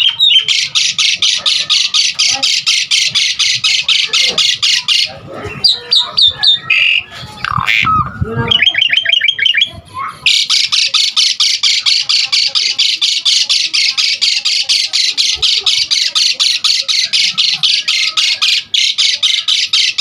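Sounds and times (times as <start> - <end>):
bird harsh rattling chatter: 0.0 - 20.0.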